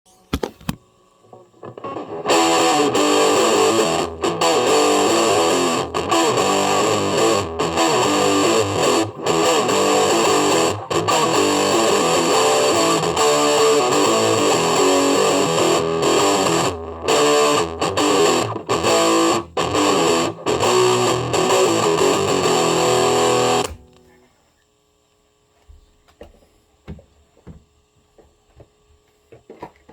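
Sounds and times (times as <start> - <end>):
distorted electric guitar music: 1.2 - 24.2.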